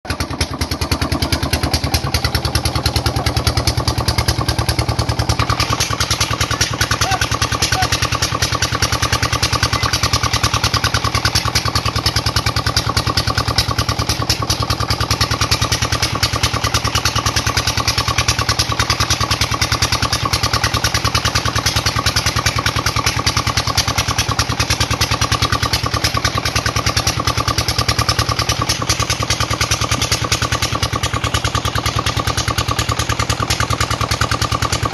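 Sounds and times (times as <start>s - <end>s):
water pump engine running: 0.1s - 34.9s.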